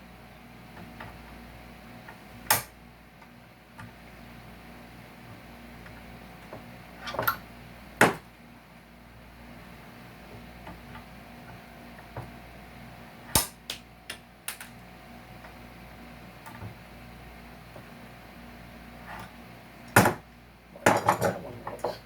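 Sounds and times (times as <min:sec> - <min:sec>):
loud snap: 0:13.3 - 0:14.7
pliers clicking and knocking: 0:14.5 - 0:14.7.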